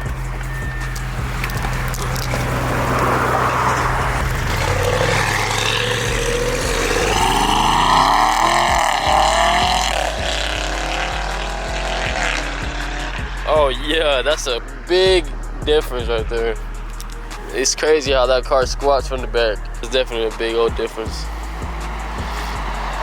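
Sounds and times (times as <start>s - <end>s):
car engine accelerating: 0.0s - 23.0s.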